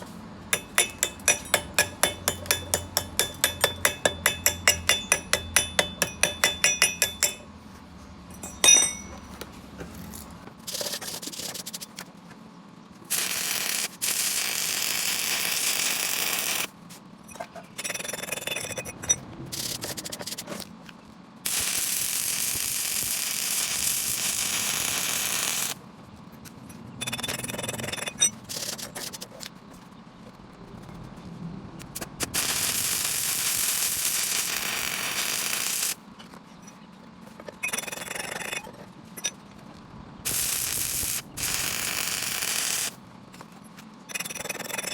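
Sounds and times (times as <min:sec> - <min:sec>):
ringing metal taps: 0:00.6 - 0:07.6, 0:08.3 - 0:09.4
welding arc crackling and hissing: 0:13.1 - 0:16.7, 0:21.5 - 0:25.8, 0:31.9 - 0:36.0, 0:40.3 - 0:43.0.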